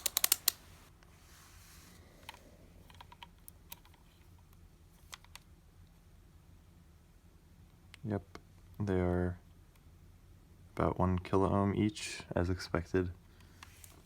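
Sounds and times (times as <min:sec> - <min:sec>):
rotary switch clicking: 0:00.0 - 0:00.6.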